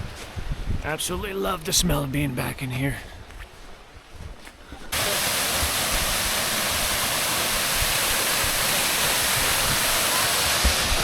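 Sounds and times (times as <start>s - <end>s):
waterfall rushing: 5.0s - 11.0s.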